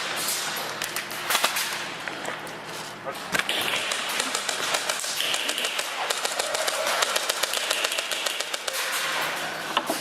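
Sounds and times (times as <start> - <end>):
airsoft guns firing bursts: 3.5 - 9.0.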